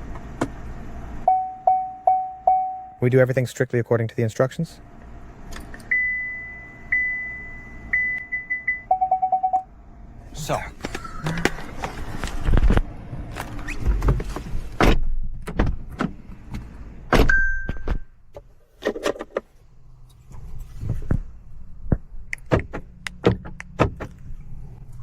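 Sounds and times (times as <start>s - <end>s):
short electronic beep: 1.3s - 3.0s, 5.9s - 9.7s
clicks of car controls: 21.9s - 24.3s.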